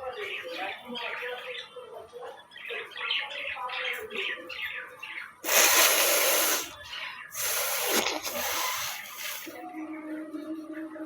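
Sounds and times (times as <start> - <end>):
birds chirping: 0.0 - 9.6
person blowing nose: 5.4 - 6.8, 7.4 - 9.6.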